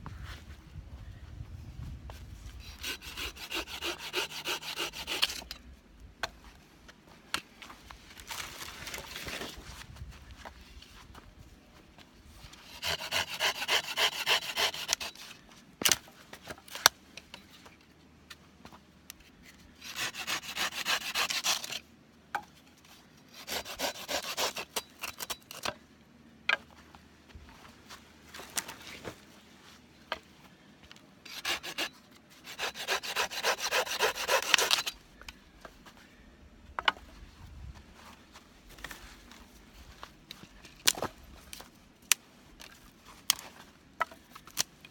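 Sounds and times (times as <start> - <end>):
hand saw cutting wood: 2.6 - 5.5, 12.6 - 15.3, 19.8 - 21.8, 23.3 - 25.7, 31.2 - 34.9.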